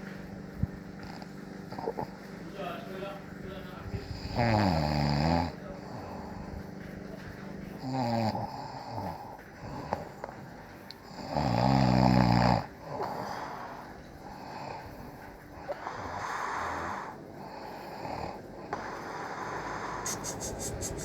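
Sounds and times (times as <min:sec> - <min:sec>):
person snoring: 0:04.0 - 0:06.3, 0:19.0 - 0:21.0.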